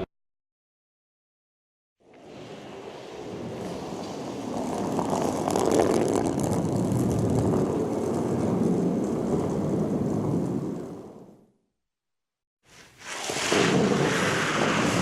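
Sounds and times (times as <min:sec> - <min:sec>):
curling stone sliding on ice: 0:03.5 - 0:09.6, 0:12.7 - 0:15.0.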